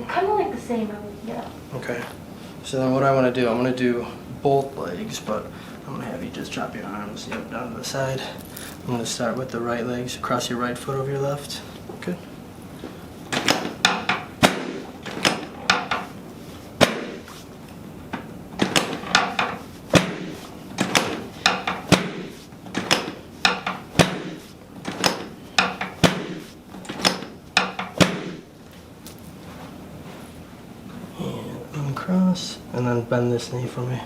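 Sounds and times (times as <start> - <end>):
sharp knocks and clacks: 13.3 - 16.1, 18.1 - 28.5.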